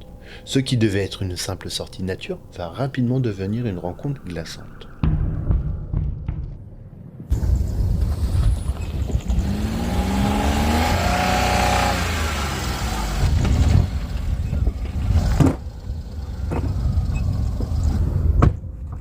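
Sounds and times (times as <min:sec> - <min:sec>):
sharp knocks: 0:03.9 - 0:07.3
vehicle engine accelerating: 0:07.3 - 0:18.4.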